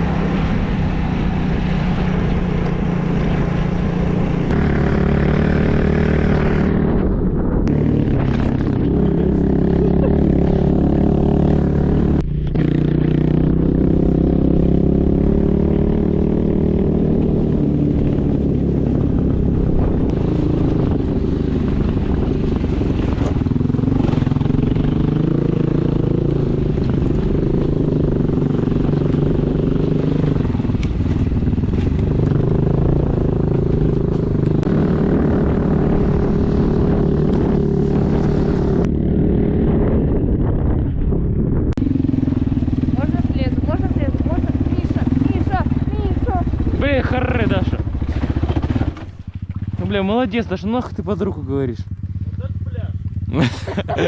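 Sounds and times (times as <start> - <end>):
vehicle engine running under load: 39.7 - 54.0.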